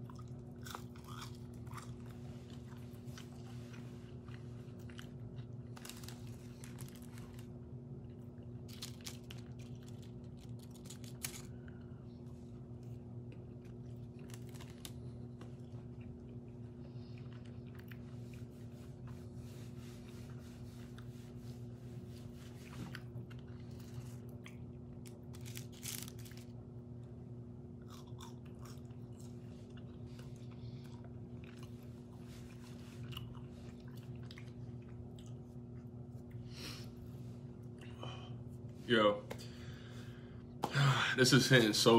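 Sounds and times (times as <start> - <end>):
person chewing food: 0.0 - 19.4, 22.5 - 26.5, 27.8 - 36.5
steady low hum: 0.0 - 41.9.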